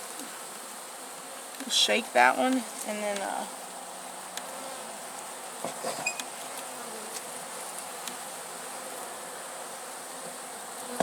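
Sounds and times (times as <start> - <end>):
honeybees buzzing: 0.0 - 11.0.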